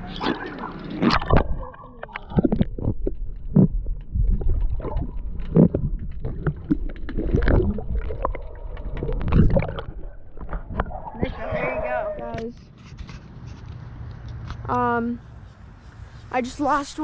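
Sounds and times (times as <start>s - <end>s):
water sloshing and splashing: 0.0s - 12.3s.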